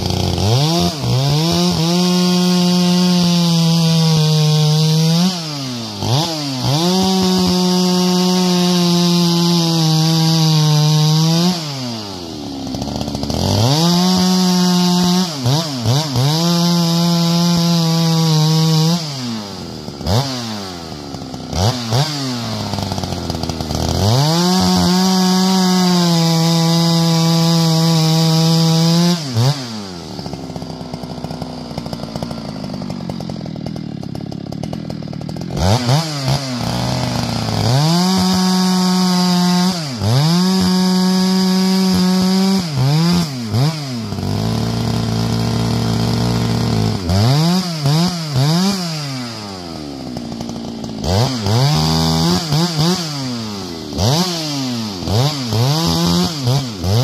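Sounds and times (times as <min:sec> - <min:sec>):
chainsaw cutting logs: 0:00.0 - 0:57.0.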